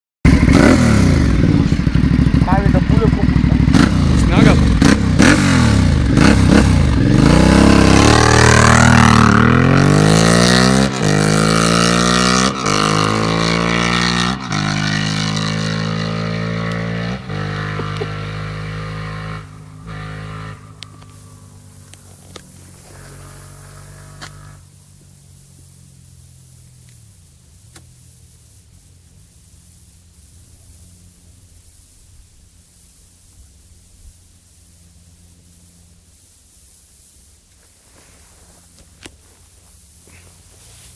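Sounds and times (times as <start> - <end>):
motorcycle accelerating hard: 0.2 - 27.2.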